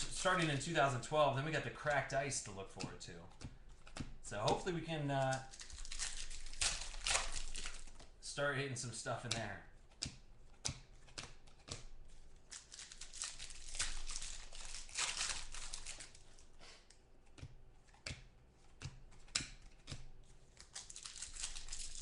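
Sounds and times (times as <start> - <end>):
wrapper crinkling: 0.0 - 2.3, 4.3 - 8.1, 12.4 - 16.6, 20.4 - 22.0
trading cards flicked through: 0.0 - 8.1, 9.0 - 16.2.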